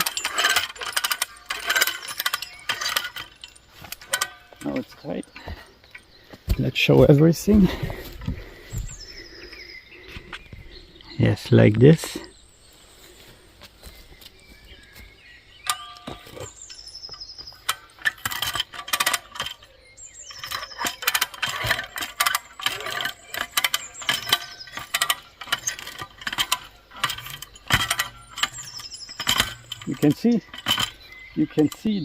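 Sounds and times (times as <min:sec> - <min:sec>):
ratchet cable puller clicking: 0:00.0 - 0:05.5, 0:17.6 - 0:19.7, 0:20.3 - 0:32.0.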